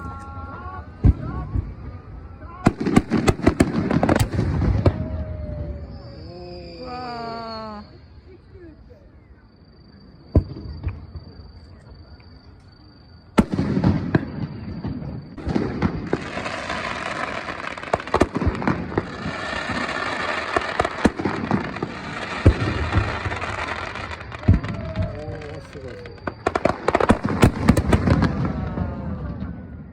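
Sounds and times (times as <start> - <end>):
firework bangs: 0.0 - 6.3, 10.3 - 11.6, 13.3 - 29.9
firework boom: 0.9 - 6.0, 13.4 - 19.9, 20.5 - 29.9
crackling firework pops: 2.7 - 5.1, 13.4 - 28.6.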